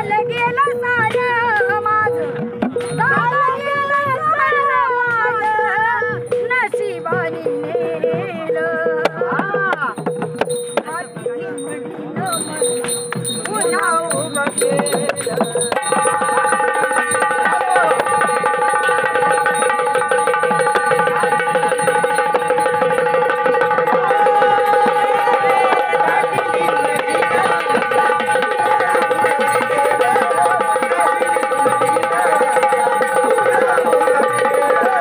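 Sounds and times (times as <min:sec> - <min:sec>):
fast drumming: 0:06.1 - 0:35.0.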